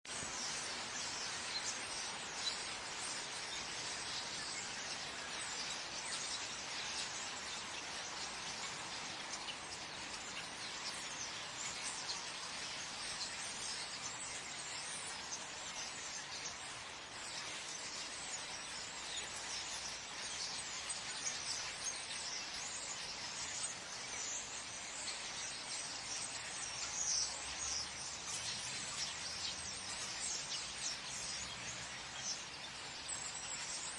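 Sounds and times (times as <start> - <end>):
birds chirping: 0.1 - 33.9
continuous hiss: 0.1 - 33.9.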